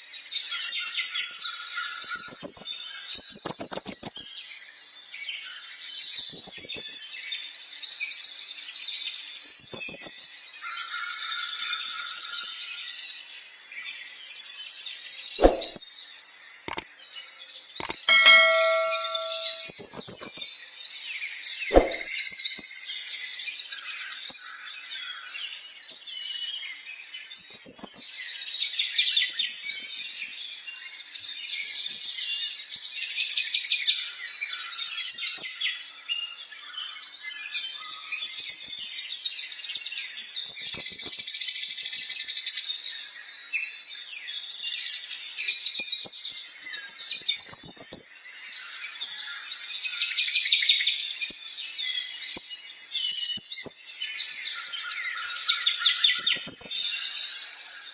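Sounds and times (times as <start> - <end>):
brief ringing tone: 15.4 - 15.7, 17.8 - 19.6, 21.7 - 22.0
small birds chirping chorus: 47.6 - 57.9.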